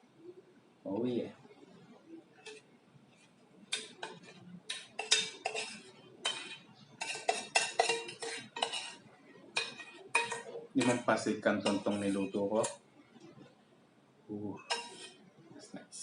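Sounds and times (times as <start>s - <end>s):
metal utensil scraping a dish: 2.4s - 2.6s, 3.7s - 12.8s, 14.6s - 15.2s.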